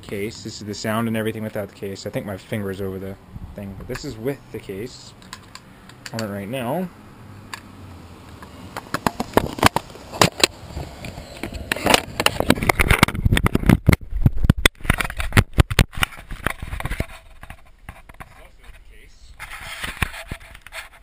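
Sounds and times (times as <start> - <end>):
fingers scraping camera housing: 19.4 - 21.0.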